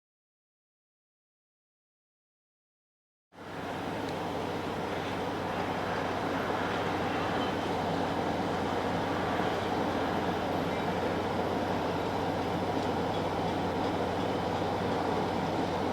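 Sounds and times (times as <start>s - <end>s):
passenger train rumbling by: 3.4s - 15.9s.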